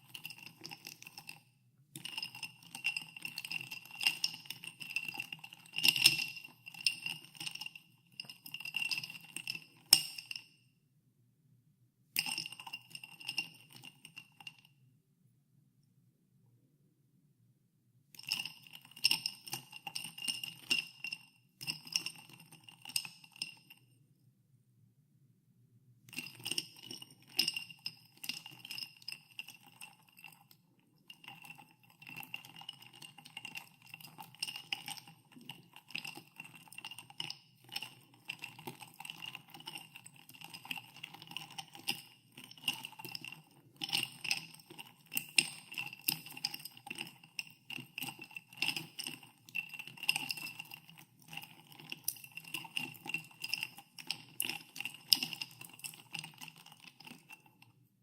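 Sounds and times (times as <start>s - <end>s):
ice cubes clinking in glass: 36.0s - 57.4s.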